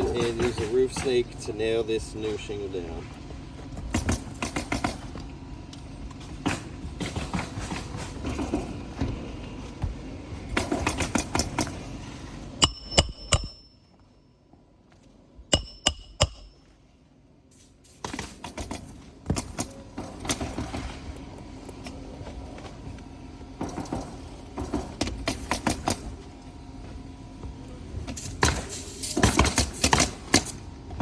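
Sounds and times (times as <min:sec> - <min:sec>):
hammer striking metal tool: 0:12.6 - 0:13.8, 0:15.5 - 0:16.6.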